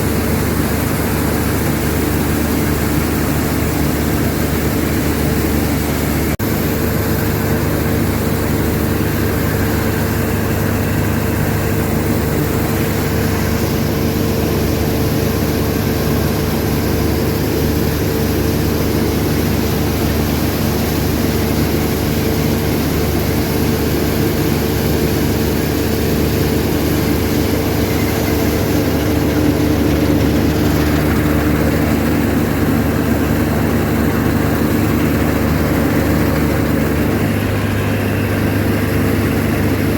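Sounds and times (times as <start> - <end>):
combine harvester engine running: 0.0 - 39.9.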